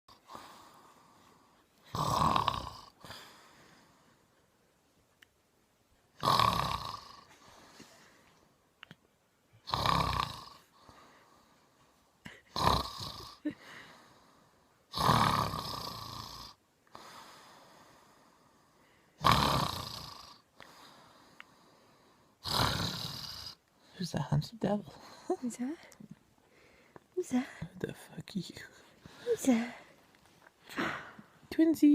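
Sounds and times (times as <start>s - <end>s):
quiet breathing: 0.1s - 1.9s, 2.8s - 4.8s, 7.2s - 8.8s, 10.5s - 12.5s, 13.4s - 14.9s, 15.8s - 19.2s, 20.2s - 22.4s, 23.3s - 31.5s
man snoring: 1.9s - 3.2s, 6.2s - 7.3s, 9.6s - 10.6s, 12.5s - 13.5s, 14.9s - 16.6s, 19.2s - 20.4s, 22.4s - 23.6s.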